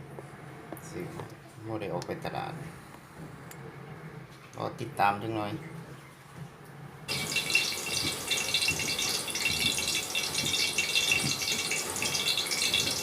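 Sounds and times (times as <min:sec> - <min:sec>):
hot oil sizzling in a pan: 0:07.1 - 0:13.0.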